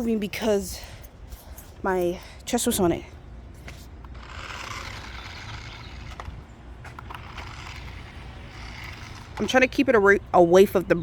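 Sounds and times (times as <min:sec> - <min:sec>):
toy car electric motor whirring: 0:03.6 - 0:09.8.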